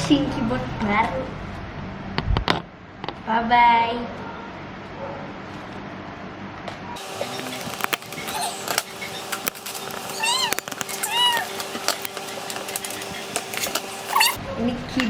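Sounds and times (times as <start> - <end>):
cat meowing: 10.1 - 11.6, 14.1 - 14.4.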